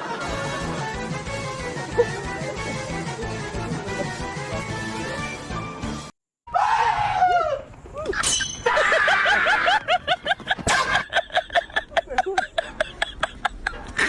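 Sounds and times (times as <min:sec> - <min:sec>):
background music: 0:00.0 - 0:06.1.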